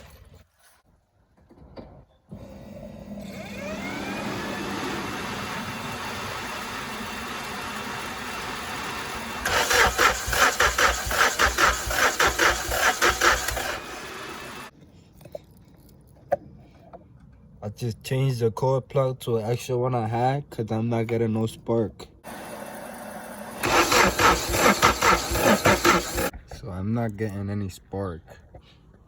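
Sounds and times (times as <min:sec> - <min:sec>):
starter motor cranking engine: 0:02.3 - 0:14.7, 0:22.2 - 0:26.3
rhythmic engine chugging: 0:09.4 - 0:14.0.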